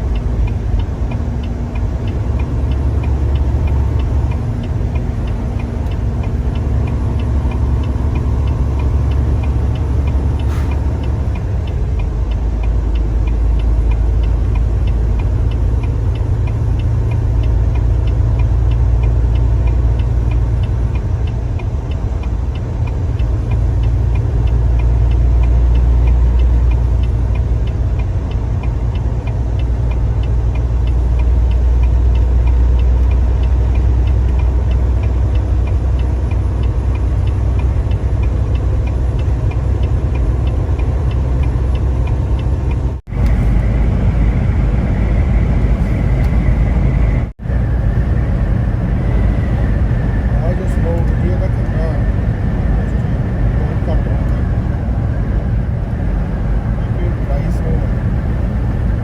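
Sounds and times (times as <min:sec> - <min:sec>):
faint regular ticking: 0:00.0 - 0:43.8
car cabin rumble: 0:00.0 - 0:59.0.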